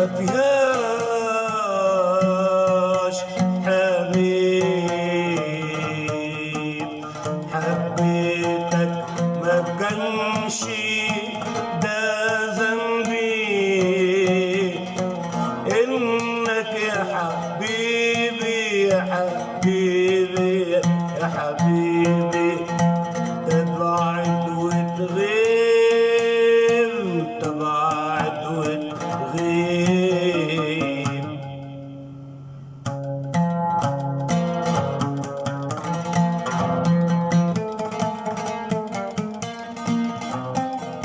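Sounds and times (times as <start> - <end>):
plucked strings: 0.0 - 41.0.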